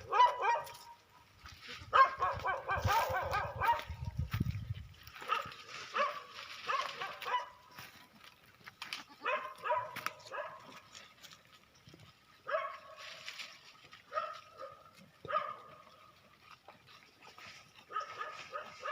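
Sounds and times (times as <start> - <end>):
goat kid bleating: 8.8 - 9.6.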